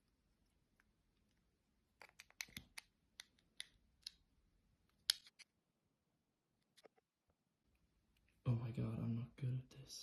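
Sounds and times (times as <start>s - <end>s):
small sharp clicks and taps: 2.0s - 4.2s.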